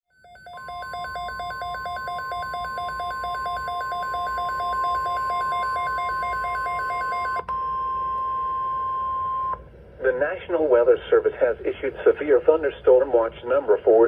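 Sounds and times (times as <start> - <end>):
warbling alarm beeps: 0.2 - 9.6.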